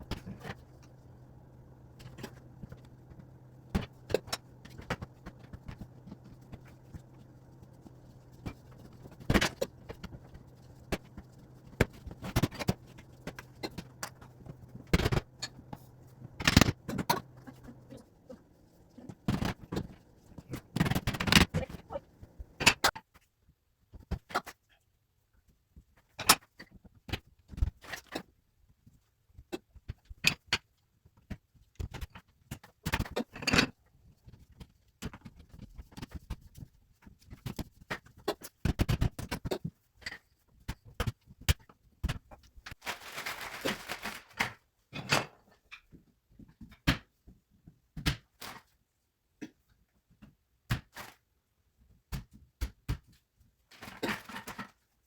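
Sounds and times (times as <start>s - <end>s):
scraping or rustling: 42.7s - 44.6s.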